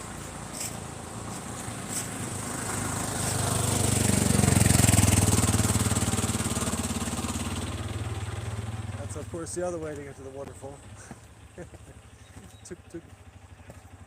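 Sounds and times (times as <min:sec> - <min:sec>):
auto-rickshaw engine puttering: 0:00.0 - 0:14.0.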